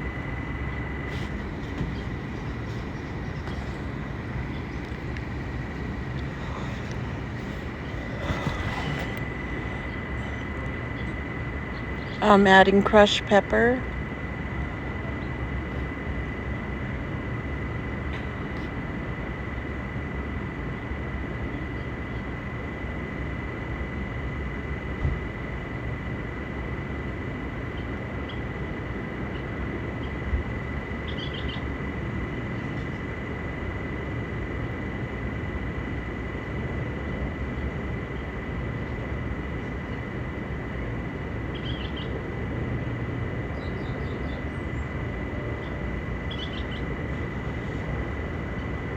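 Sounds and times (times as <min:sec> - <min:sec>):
steady rushing noise: 0:00.0 - 0:11.5
high whine: 0:00.0 - 0:48.9
bird chirps: 0:45.6 - 0:46.9.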